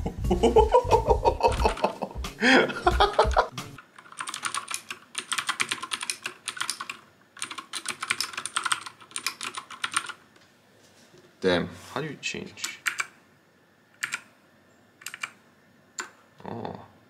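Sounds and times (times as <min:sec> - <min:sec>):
background music: 0:00.0 - 0:03.8
mechanical keyboard keys clacking: 0:01.4 - 0:02.0, 0:03.1 - 0:10.2, 0:12.6 - 0:13.1, 0:14.0 - 0:14.3, 0:15.0 - 0:15.4.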